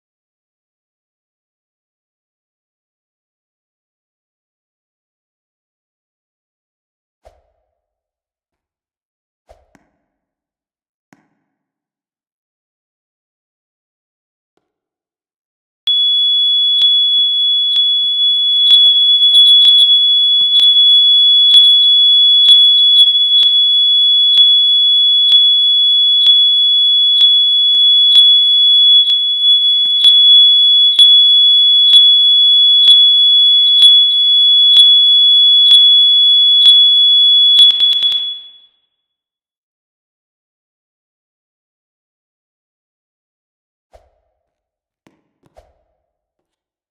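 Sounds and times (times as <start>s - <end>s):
fire alarm high-pitched tone: 15.9s - 38.8s.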